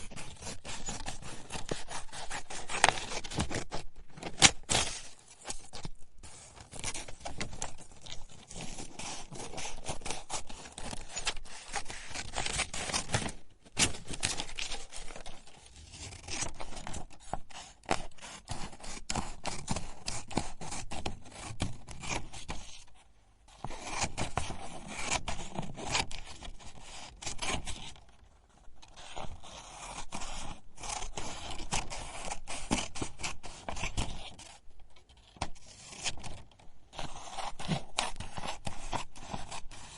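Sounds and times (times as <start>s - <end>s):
scissors cutting paper: 0.0s - 22.6s, 35.4s - 39.9s.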